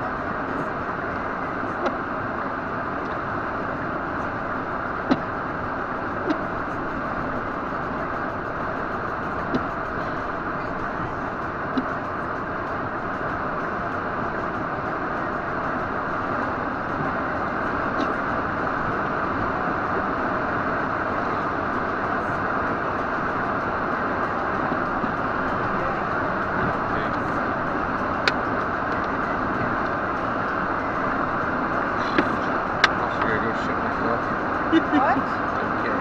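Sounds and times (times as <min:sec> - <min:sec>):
road and wind noise in car: 0:00.0 - 0:36.0.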